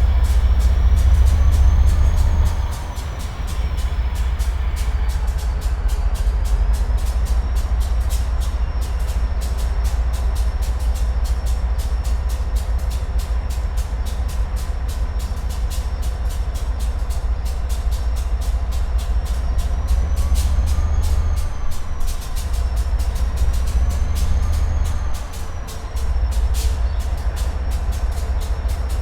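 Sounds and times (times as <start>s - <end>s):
steel wheels clicking on track: 0.0s - 29.0s
train rumbling: 0.0s - 29.0s.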